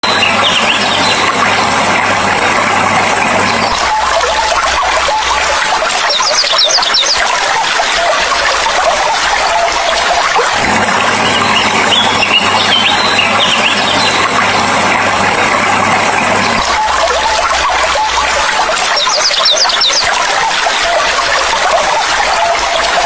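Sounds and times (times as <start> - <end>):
flowing water rushing: 0.0 - 23.0
birds chirping: 3.6 - 14.6, 16.6 - 23.0.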